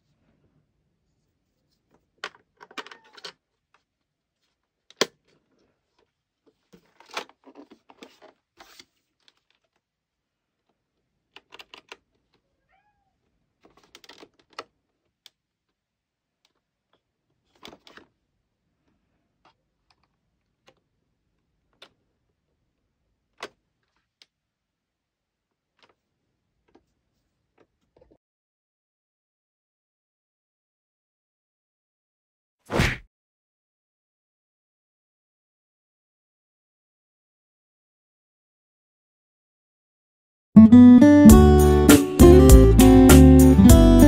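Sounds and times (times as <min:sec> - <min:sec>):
cat meowing faintly: 0:12.6 - 0:13.3.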